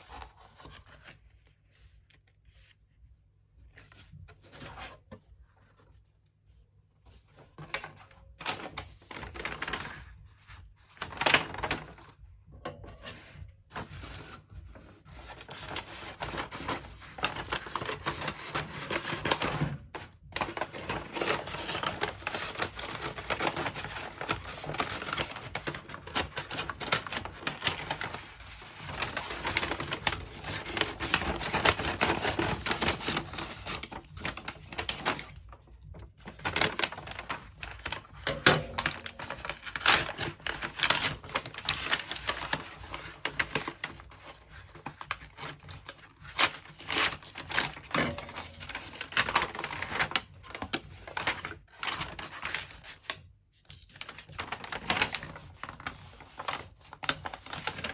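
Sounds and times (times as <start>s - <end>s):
paper and cardboard rustling: 0.0s - 2.9s, 3.6s - 53.1s, 53.7s - 57.9s.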